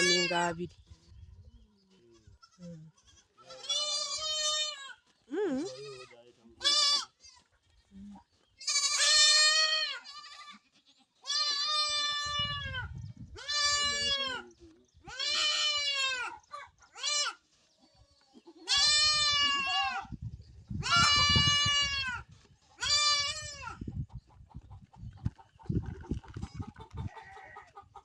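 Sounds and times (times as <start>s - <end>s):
goat bleating: 0.0s - 0.6s, 1.9s - 7.9s, 8.6s - 17.5s, 18.3s - 20.1s, 20.8s - 23.8s, 26.4s - 27.8s.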